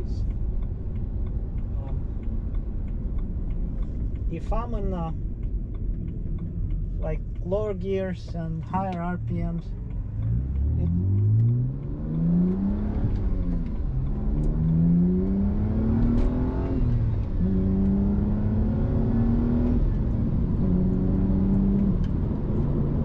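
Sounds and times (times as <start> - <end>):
car engine accelerating hard: 9.2 - 23.0.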